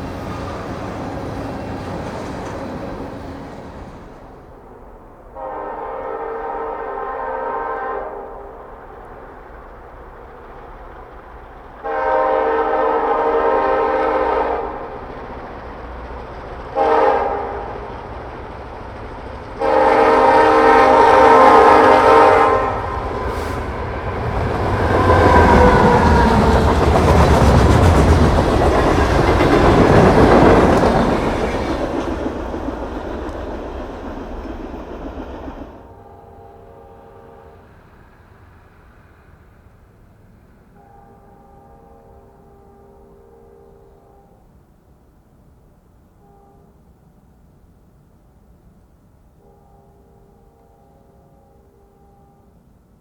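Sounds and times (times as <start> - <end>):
train passing: 0.0 - 53.0
locomotive air horn chord: 5.4 - 9.0, 11.8 - 15.0, 16.8 - 17.9, 19.6 - 23.7, 35.8 - 37.8.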